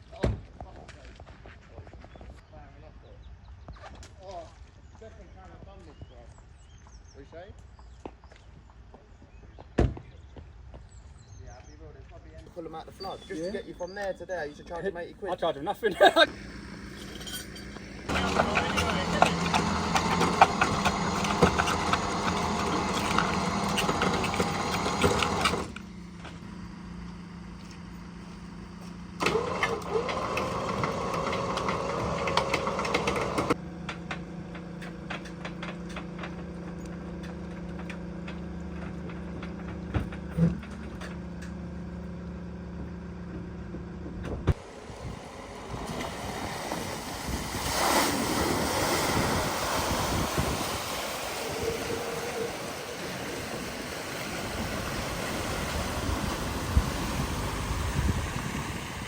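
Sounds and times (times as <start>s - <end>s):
vehicle engine idling: 12.3s - 59.0s.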